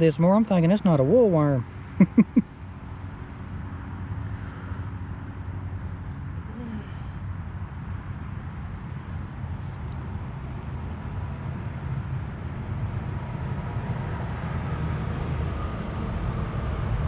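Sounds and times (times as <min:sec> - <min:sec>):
high-pitched whine: 0:04.8 - 0:17.0.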